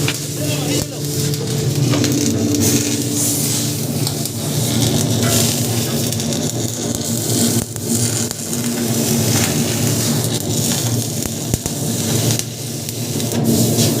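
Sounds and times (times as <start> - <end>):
low steady hum: 0.0 - 6.9
arc welding crackling sizzle: 0.0 - 14.0
welding pops: 4.0 - 14.0.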